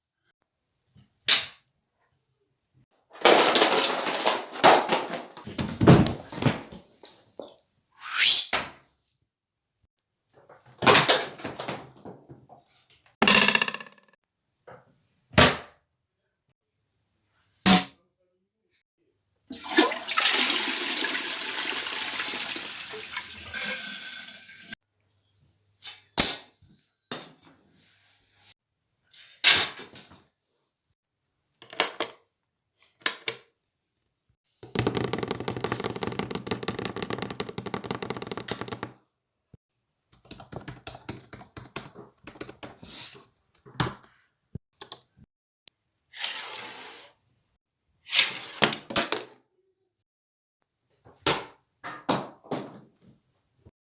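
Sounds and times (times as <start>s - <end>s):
toilet flushing: 19.5s - 24.8s
sharp knocks and clicks: 34.6s - 38.9s.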